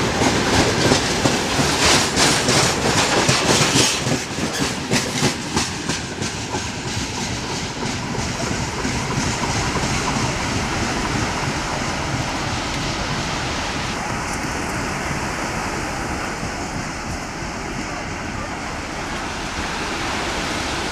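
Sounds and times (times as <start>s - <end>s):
wheels clacking over rail joints: 0.0s - 13.1s
freight train rolling rumble: 0.0s - 20.9s.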